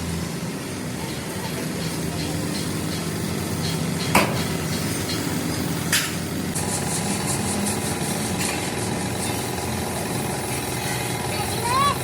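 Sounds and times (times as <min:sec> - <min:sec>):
engine running: 0:00.0 - 0:12.0
sharp knocks: 0:04.1 - 0:04.5.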